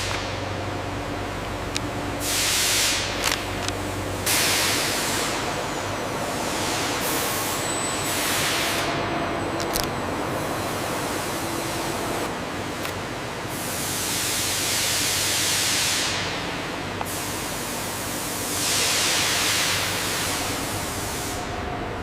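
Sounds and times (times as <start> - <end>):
low steady machinery hum: 0.0 - 22.0
hissing air bursts: 2.2 - 3.4, 17.1 - 21.5.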